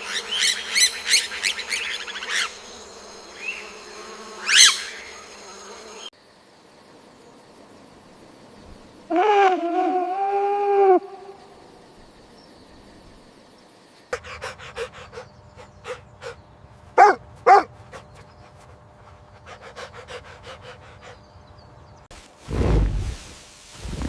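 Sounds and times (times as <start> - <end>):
dog panting quickly: 14.2 - 16.4, 17.5 - 21.5
dog yipping: 17.0 - 17.7.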